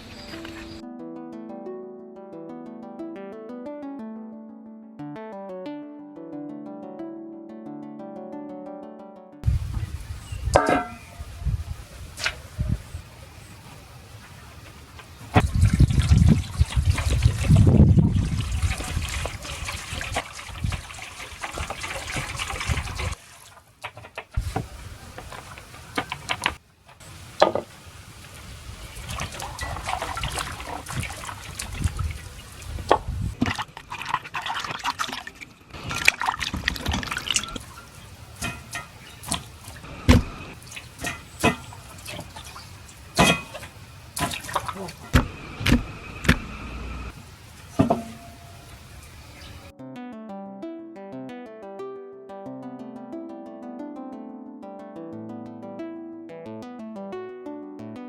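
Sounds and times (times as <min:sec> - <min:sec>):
water running and trickling: 0:15.3 - 0:39.9, 0:40.5 - 0:45.2, 0:47.1 - 0:49.7.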